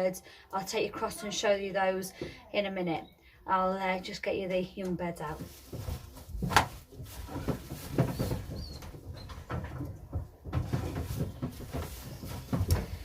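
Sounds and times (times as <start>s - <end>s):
rustling: 5.1s - 13.0s
knocks and clatter: 5.7s - 13.0s.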